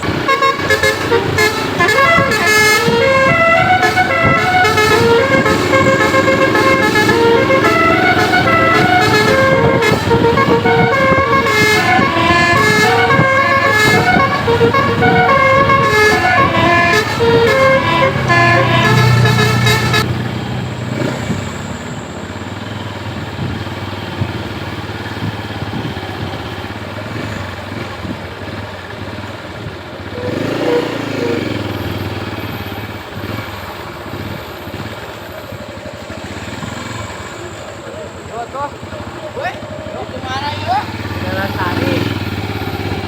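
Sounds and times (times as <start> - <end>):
musical air horn playing a melody: 0.0 - 20.2, 30.2 - 31.7
bus engine: 0.0 - 43.0
road noise: 0.0 - 43.0.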